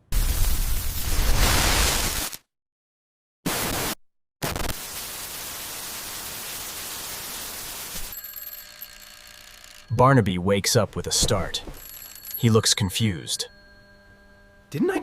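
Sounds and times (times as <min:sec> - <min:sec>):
electronic static hiss: 0:03.5 - 0:08.2.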